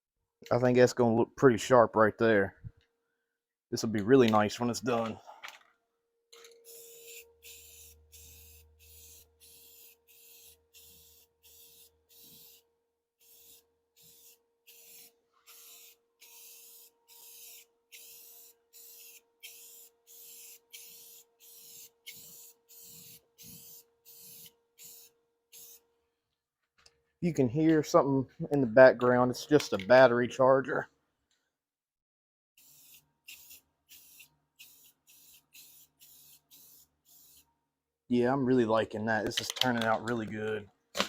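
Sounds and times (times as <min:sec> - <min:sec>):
spray paint can hissing: 0:06.7 - 0:12.6, 0:13.2 - 0:25.8, 0:32.6 - 0:37.5.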